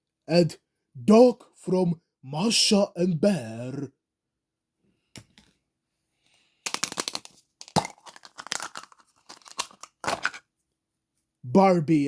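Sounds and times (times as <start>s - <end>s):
packaging crackling and clicking: 6.7s - 10.4s.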